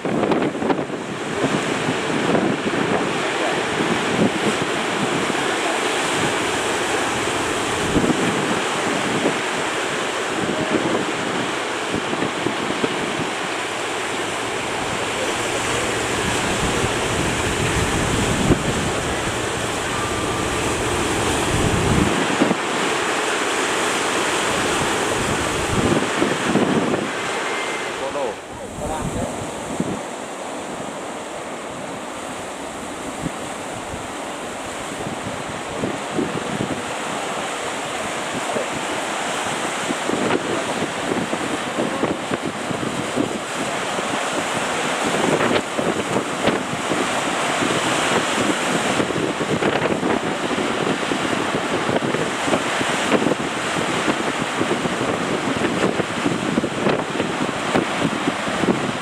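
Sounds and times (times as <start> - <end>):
ocean surf roaring: 0.0 - 59.0
wind buffeting microphone: 0.0 - 59.0.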